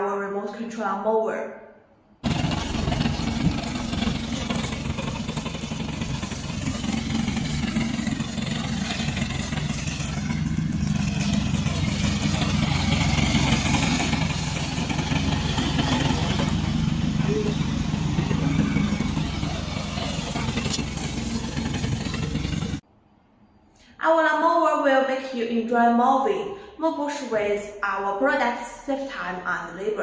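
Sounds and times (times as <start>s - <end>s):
mower engine running: 2.2s - 22.8s.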